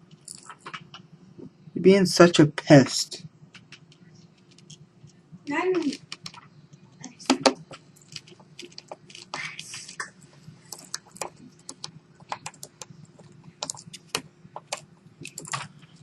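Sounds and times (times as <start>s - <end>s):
faint steady hum: 0.0s - 16.0s
small parts clicking and tapping: 3.5s - 9.4s, 10.7s - 16.0s.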